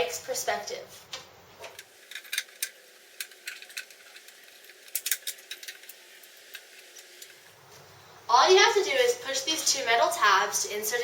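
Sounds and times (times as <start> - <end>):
plastic parts clicking and rattling: 1.7 - 7.5.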